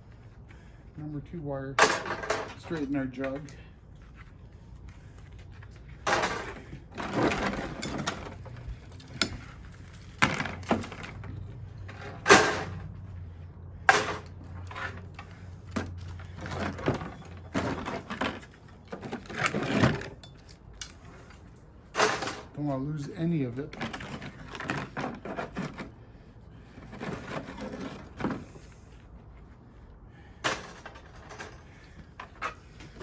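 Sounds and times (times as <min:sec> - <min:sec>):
scrap metal knocks and scrapes: 0:05.9 - 0:20.4, 0:23.5 - 0:26.0, 0:26.6 - 0:28.7.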